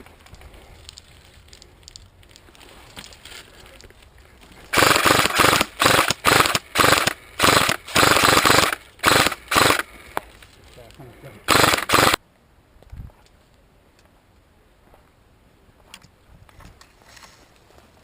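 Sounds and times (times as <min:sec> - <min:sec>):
airsoft rifle firing bursts: 0:04.7 - 0:09.9, 0:11.5 - 0:12.2.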